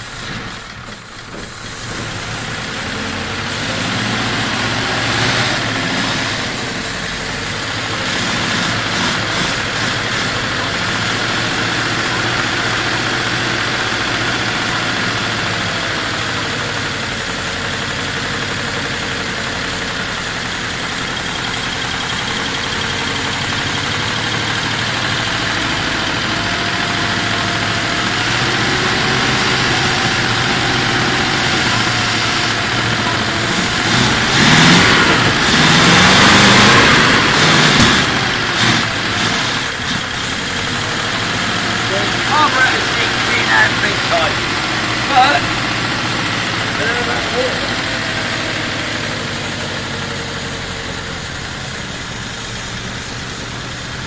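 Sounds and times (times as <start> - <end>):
car engine idling: 0.0 - 54.0.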